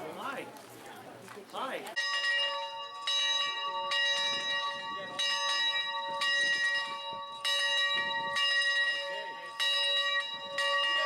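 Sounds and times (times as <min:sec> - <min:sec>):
large metal bell ringing: 0:02.0 - 0:11.0.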